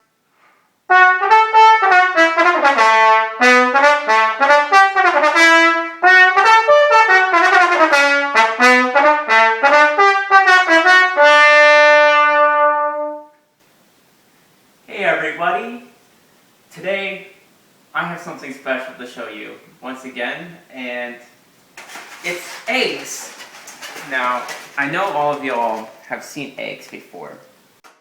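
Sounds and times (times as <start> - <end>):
solo trombone melody: 0.9 - 13.4.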